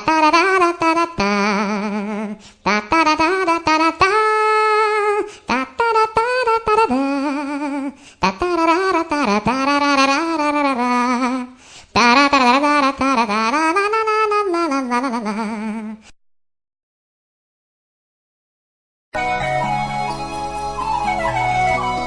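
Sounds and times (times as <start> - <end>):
wavering ringtone melody: 19.2 - 22.0.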